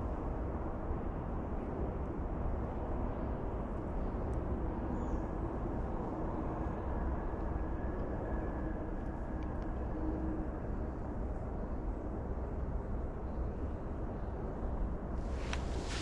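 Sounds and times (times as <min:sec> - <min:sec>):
faint steady whine: 0:04.4 - 0:16.0
vehicle rumble: 0:15.2 - 0:16.0.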